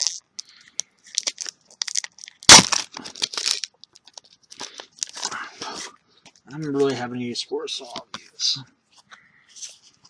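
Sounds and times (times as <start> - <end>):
loud sharp rip of wrapper: 0.0 - 0.5, 1.1 - 5.4
wrapper crinkling and tearing: 0.0 - 0.5, 1.1 - 5.4.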